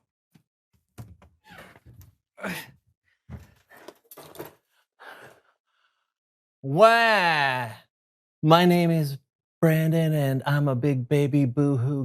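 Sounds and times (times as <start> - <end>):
person sighing and groaning: 2.4 - 2.8.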